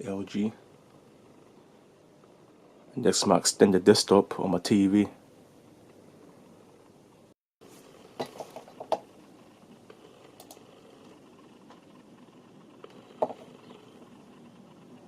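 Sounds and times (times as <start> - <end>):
computer mouse clicking: 9.9 - 11.8.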